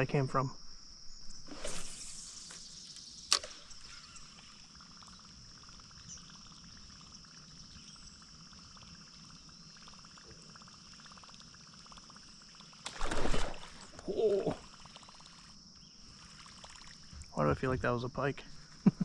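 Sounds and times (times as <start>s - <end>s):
crickets chirring: 0.0s - 19.0s
sharp click: 3.3s - 3.9s.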